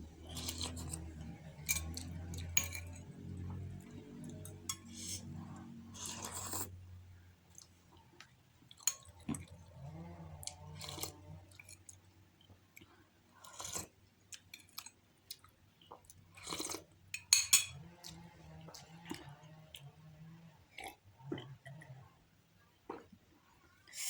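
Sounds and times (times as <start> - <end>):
slurping noodles: 0.1 - 2.5, 4.1 - 6.8
person chewing: 0.2 - 6.8, 8.7 - 17.0.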